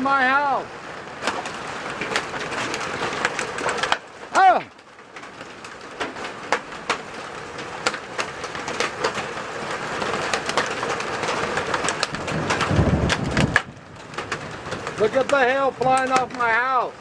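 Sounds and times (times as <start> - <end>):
heavy rain hissing: 0.0 - 4.8, 9.2 - 17.0
hailstones clacking on house: 0.0 - 17.0.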